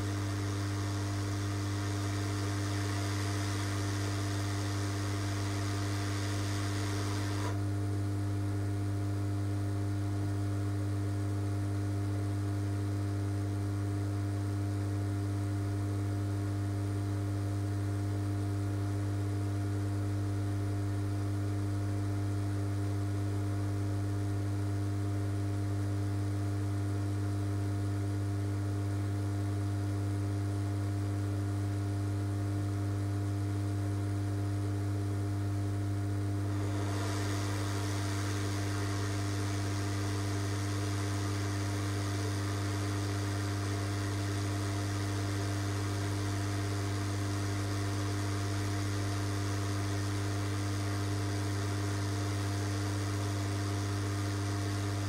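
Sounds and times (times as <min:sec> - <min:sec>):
steady hiss: 0:00.0 - 0:07.6, 0:36.5 - 0:55.0
electrical mains hum: 0:00.0 - 0:55.0.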